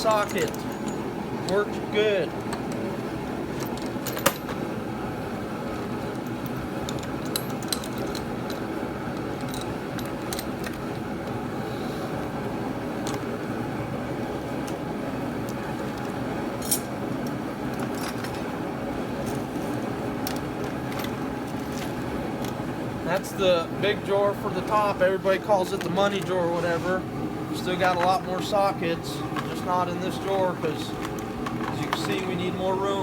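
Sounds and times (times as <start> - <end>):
metal tools clinking in drawer: 0.0 - 1.6, 16.6 - 16.9, 17.8 - 18.4, 29.2 - 32.4
steady background hum: 0.0 - 33.0.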